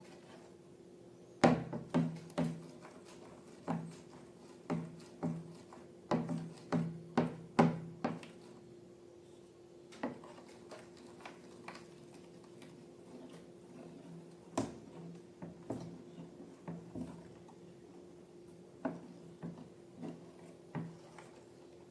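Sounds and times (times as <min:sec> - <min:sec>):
faint steady hum: 0:00.0 - 0:21.9.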